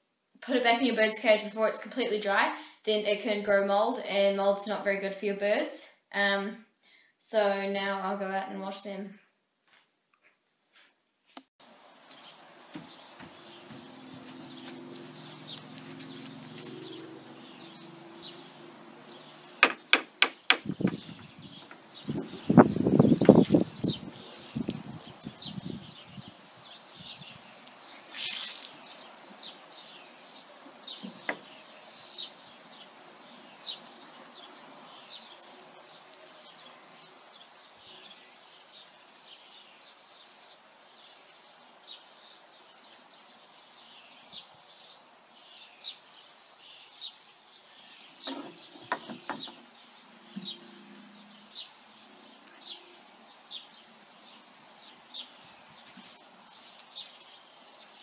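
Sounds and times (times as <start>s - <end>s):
small birds chirping: 11.6s - 58.0s
knocks: 19.6s - 21.8s, 48.3s - 49.6s.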